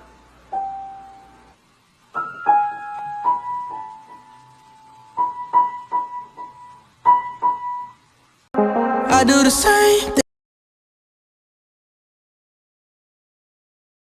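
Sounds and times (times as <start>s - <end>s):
piano notes: 0.0s - 10.2s.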